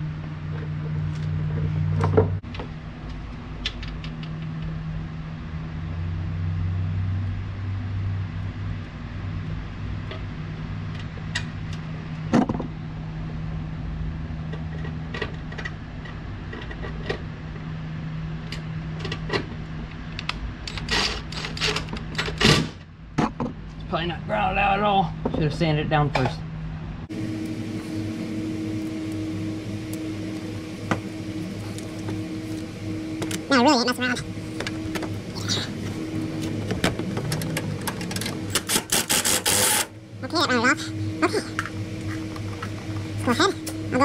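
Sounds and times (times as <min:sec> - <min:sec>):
small electric motor humming: 0:27.1 - 0:44.0.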